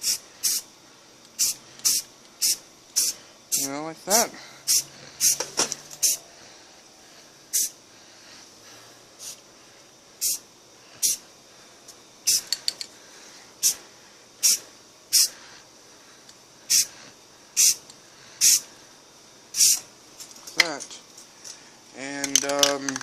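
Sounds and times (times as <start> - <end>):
spray paint can hissing: 0.0 - 0.6, 1.3 - 3.7, 4.7 - 6.2, 7.5 - 7.8, 9.2 - 9.4, 10.2 - 10.4, 11.0 - 11.2, 12.2 - 12.7, 14.4 - 15.4, 16.7 - 17.0, 17.6 - 18.7, 19.5 - 19.9.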